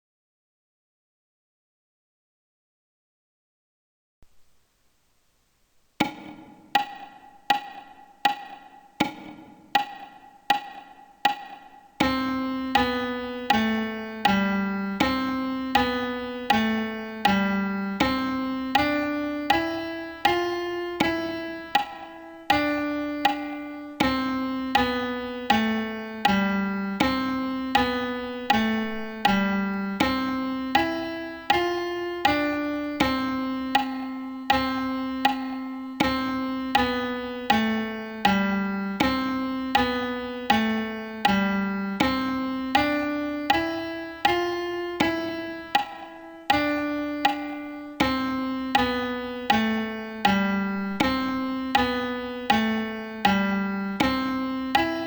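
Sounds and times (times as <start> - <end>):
piano playing simple piece: 6.0 - 55.0.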